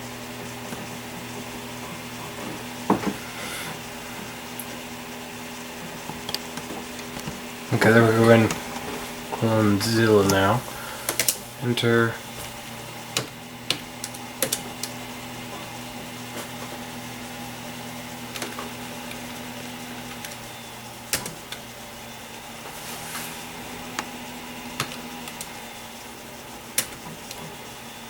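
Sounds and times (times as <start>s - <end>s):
computer hum: 0.0s - 28.0s.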